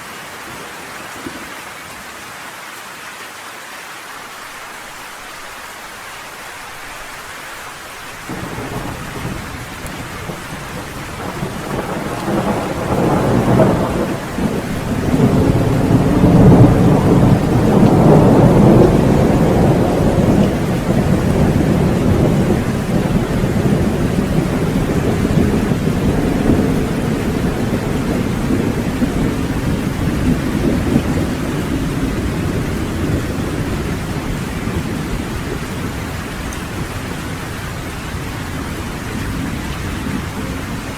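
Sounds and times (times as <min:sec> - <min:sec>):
steady rain: 0:00.0 - 0:40.9
thunder rolling: 0:08.2 - 0:40.9.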